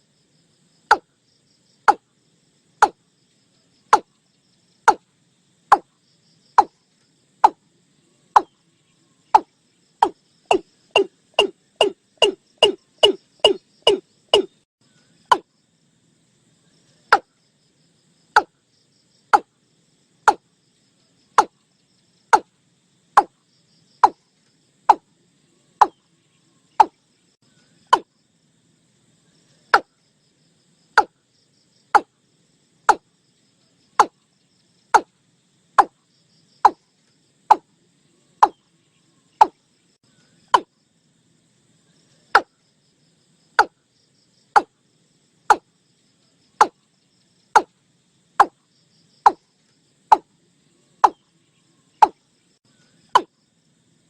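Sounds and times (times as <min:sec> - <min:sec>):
faint insect or frog chorus: 0:00.0 - 0:54.0
bird calling hollow notes: 0:08.3 - 0:08.6, 0:09.3 - 0:14.6, 0:15.2 - 0:15.5, 0:26.8 - 0:27.0, 0:27.8 - 0:28.1, 0:51.0 - 0:51.2, 0:53.1 - 0:53.3.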